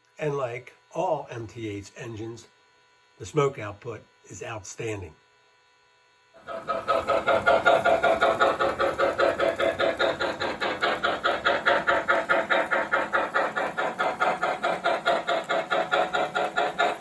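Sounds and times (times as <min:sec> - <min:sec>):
electronic steam locomotive chuffing: 0:06.4 - 0:17.0.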